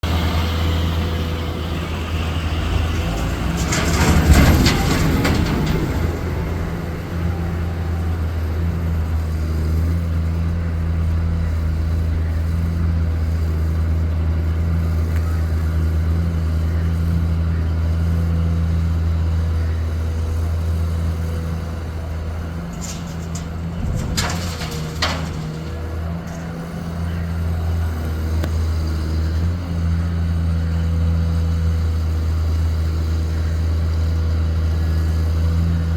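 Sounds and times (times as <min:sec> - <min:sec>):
loud rattling rush: 0:00.0 - 0:09.1, 0:21.7 - 0:27.5
excavator diesel engine running: 0:00.0 - 0:35.9
sharp metal clanks: 0:22.5 - 0:27.0.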